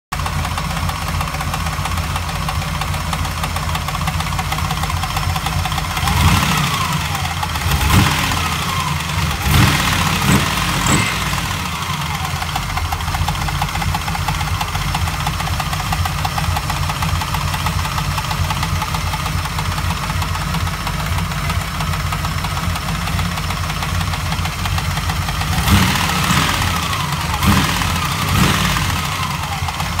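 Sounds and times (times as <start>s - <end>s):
car engine idling: 0.1s - 30.0s
engine knocking: 0.1s - 30.0s
engine revving: 5.6s - 13.0s, 25.4s - 30.0s.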